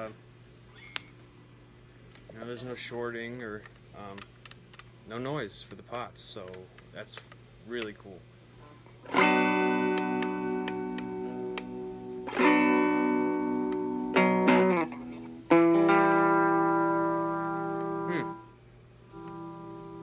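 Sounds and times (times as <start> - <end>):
electric guitar chords ringing: 8.6 - 20.0.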